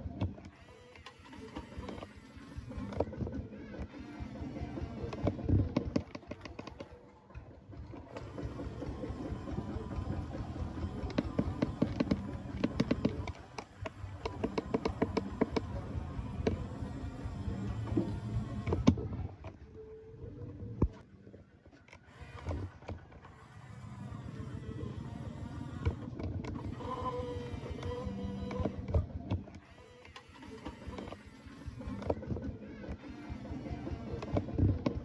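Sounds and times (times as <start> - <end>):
small electric motors running: 0.0 - 19.3, 21.9 - 35.0
steady low hum: 0.0 - 35.0
sharp clicks and rattles: 0.2 - 19.0.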